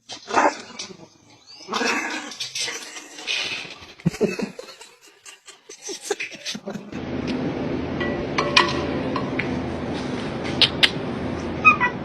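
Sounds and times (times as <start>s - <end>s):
person laughing: 2.7s - 7.0s
steady low hum: 5.7s - 12.0s.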